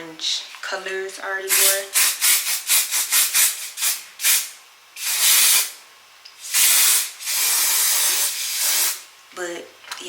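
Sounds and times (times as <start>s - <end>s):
spray hissing in bursts: 1.5s - 5.7s, 6.4s - 9.0s.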